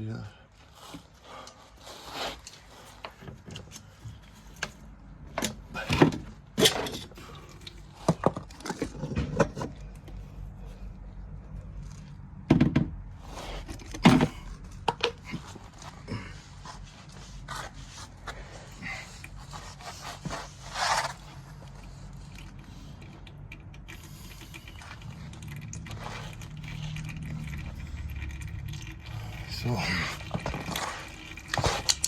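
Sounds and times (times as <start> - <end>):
tools knocking and clunking: 12.4 - 13.0.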